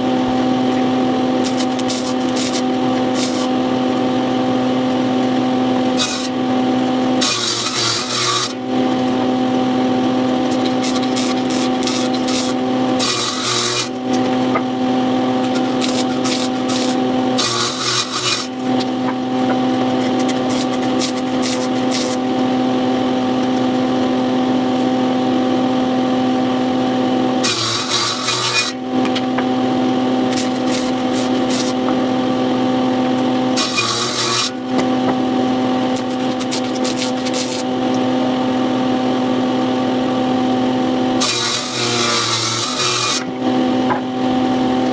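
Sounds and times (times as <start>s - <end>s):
power tool motor hum: 0.1s - 44.9s
tool rasping into wood: 1.4s - 3.6s, 5.8s - 6.5s, 7.2s - 9.1s, 10.4s - 14.7s, 15.4s - 22.3s, 27.4s - 29.5s, 30.3s - 32.0s, 33.0s - 35.2s, 41.2s - 43.3s.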